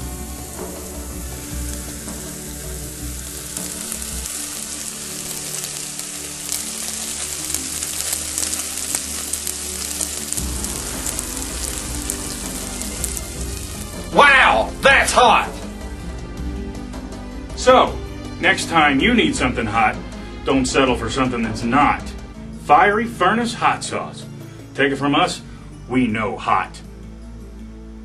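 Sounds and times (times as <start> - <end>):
dense crackling and hissing: 0.0 - 17.6
low background music: 0.0 - 28.0.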